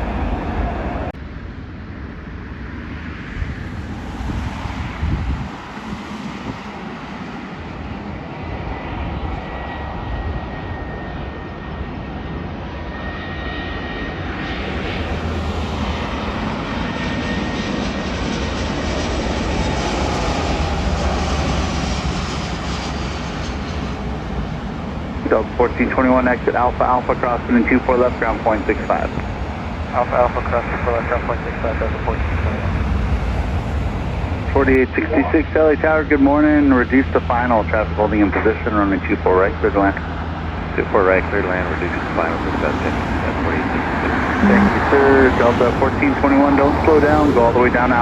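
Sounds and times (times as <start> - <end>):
jet engines rushing: 0.0 - 48.0.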